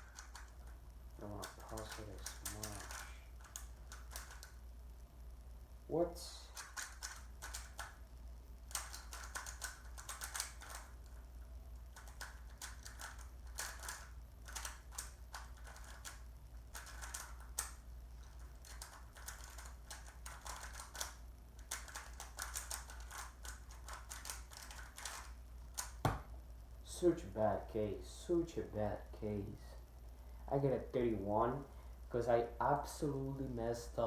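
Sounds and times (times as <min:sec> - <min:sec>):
steady low hum: 0:00.0 - 0:34.0
puzzle cube layers clicking: 0:08.7 - 0:11.2, 0:11.8 - 0:26.0.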